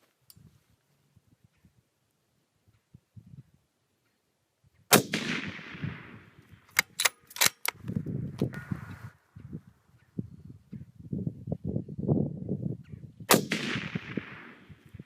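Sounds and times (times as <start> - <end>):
rifle shot echoing: 4.9 - 7.0, 13.3 - 15.0
rifle bolt clicks: 6.7 - 8.0.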